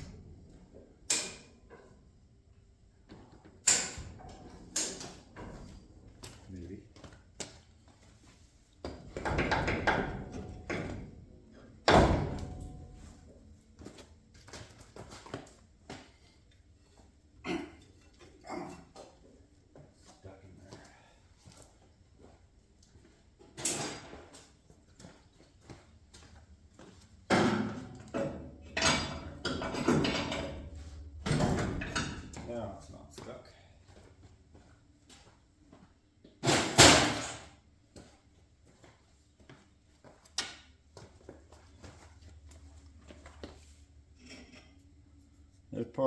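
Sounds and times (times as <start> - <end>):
heavy metal clunks and knocks: 8.9 - 11.2, 27.3 - 32.5
metallic bangs and clanks: 27.3 - 32.6, 36.4 - 37.5.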